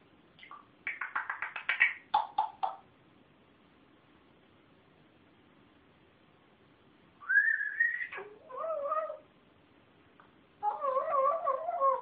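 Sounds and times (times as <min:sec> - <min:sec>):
pet vocalizing: 0:08.0 - 0:09.3, 0:10.6 - 0:12.0.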